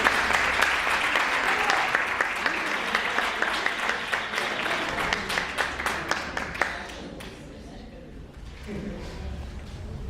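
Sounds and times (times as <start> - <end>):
audience applauding: 0.0 - 7.4.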